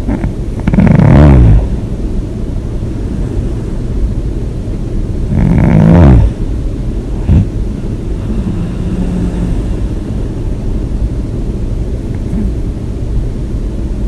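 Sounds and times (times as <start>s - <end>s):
steady low hum: 0.0s - 14.0s
woman snoring: 0.1s - 1.8s, 5.3s - 6.4s, 7.2s - 11.2s
short snort: 5.3s - 6.4s, 7.2s - 10.4s.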